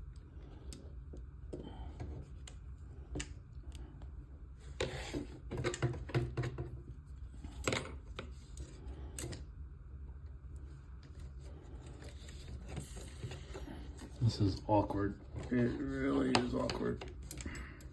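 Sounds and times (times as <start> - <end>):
low steady hum: 0.0 - 17.9
small parts rattling and rustling: 15.2 - 17.9.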